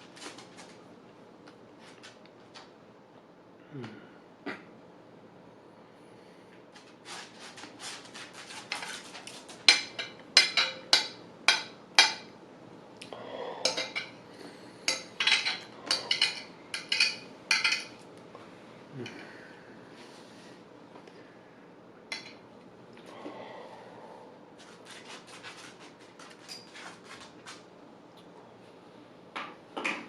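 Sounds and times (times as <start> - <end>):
cutlery clinking on a plate: 9.7 - 12.3, 14.9 - 18.0.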